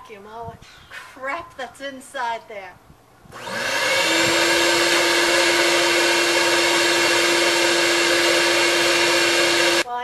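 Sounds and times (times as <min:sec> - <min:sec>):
vacuum cleaner running: 0:03.3 - 0:09.9.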